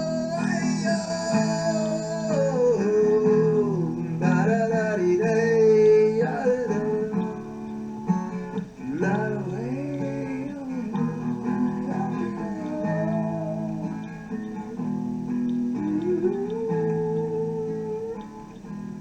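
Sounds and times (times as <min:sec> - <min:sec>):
acoustic guitar strumming: 0:00.0 - 0:19.0.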